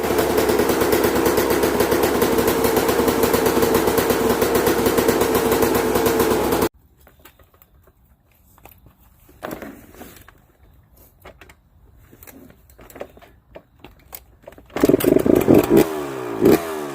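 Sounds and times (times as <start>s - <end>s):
dirt bike engine running: 0.0s - 6.7s, 14.8s - 16.9s.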